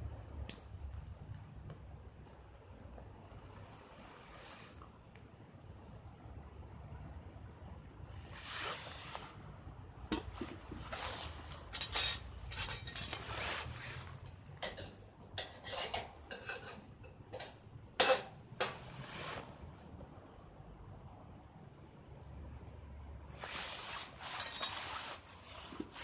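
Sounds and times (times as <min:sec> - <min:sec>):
metal utensils clinking and knocking: 0:10.1 - 0:18.9, 0:24.2 - 0:25.0.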